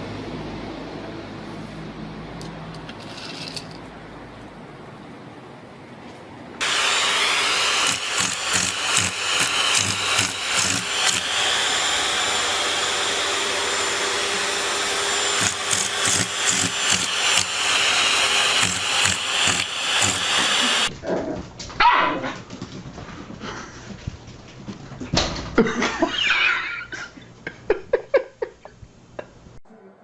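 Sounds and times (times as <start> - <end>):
whirring motor: 6.6 - 20.9.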